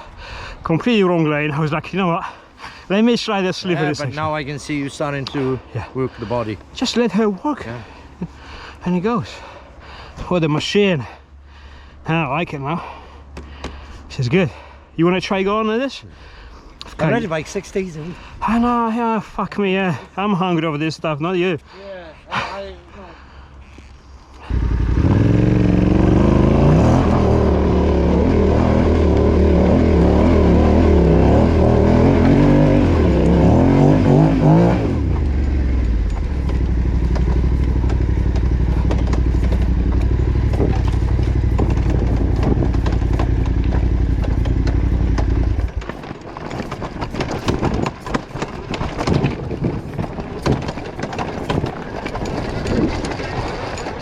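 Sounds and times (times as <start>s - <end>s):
motorcycle engine revving: 24.4s - 46.0s
knocks and clatter: 34.7s - 54.0s.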